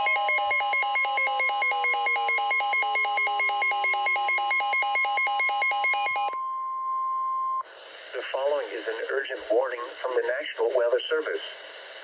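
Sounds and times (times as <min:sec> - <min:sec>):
warbling two-tone alarm: 0:00.0 - 0:06.4.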